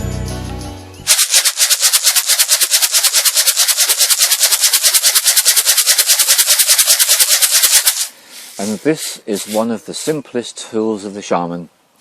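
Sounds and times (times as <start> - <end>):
container rattle shaken: 1.1 - 8.8.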